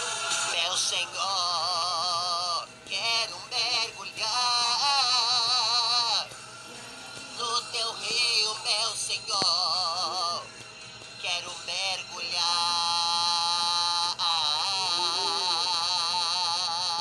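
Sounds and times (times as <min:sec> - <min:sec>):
backing track music: 0:00.0 - 0:01.3, 0:02.7 - 0:13.8
man singing with vibrato: 0:00.0 - 0:10.6, 0:11.2 - 0:17.0.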